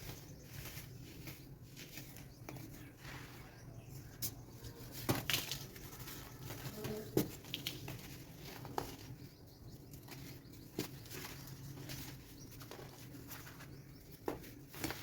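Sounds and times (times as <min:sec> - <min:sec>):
baking soda crumbling: 0:04.1 - 0:11.9.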